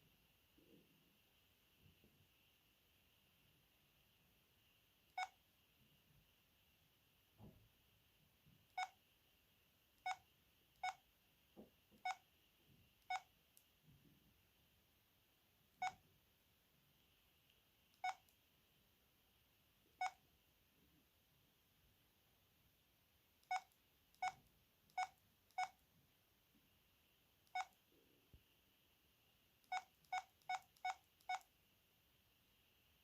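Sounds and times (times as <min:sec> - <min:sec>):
phone keypad beeps: 0:05.2 - 0:05.4, 0:08.7 - 0:09.0, 0:10.0 - 0:10.2, 0:10.8 - 0:11.0, 0:12.0 - 0:12.2, 0:13.0 - 0:13.3, 0:15.8 - 0:16.0, 0:18.0 - 0:18.3, 0:23.4 - 0:25.8, 0:27.5 - 0:27.8, 0:29.6 - 0:31.5.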